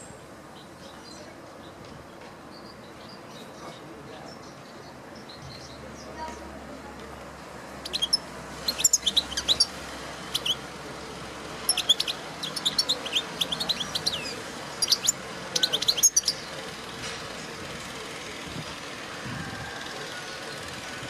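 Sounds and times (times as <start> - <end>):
goldfinch twittering chirps: 7.8 - 10.7, 11.6 - 16.6.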